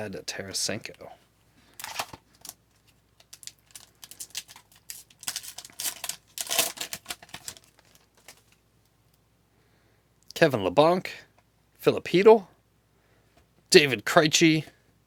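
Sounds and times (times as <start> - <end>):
foil wrapper crinkling: 1.7 - 8.6.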